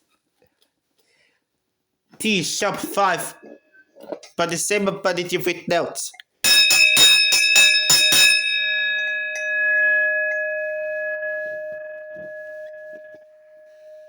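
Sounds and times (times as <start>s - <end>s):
bell struck and ringing: 6.4s - 14.0s.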